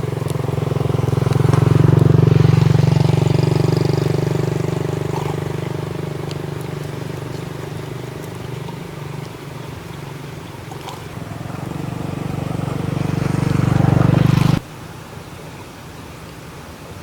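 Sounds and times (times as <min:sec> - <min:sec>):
small engine pulsing: 0:00.0 - 0:14.6.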